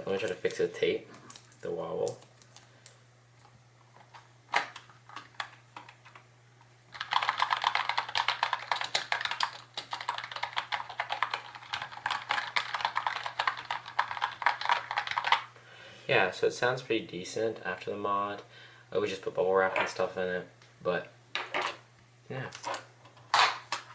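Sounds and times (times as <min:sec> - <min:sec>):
typing on a keyboard: 0:06.9 - 0:15.5.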